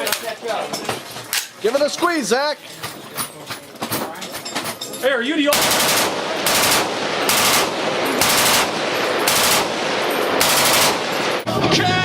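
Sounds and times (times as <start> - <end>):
continuous gunfire: 5.4 - 11.5
machine gun firing bursts: 5.5 - 11.5.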